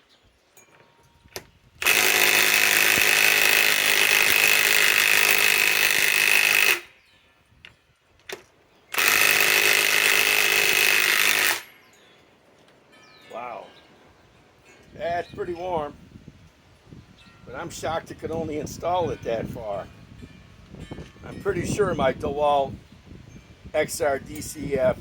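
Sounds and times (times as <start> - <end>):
impact wrench hammering a screw: 1.4 - 6.9, 8.3 - 11.7.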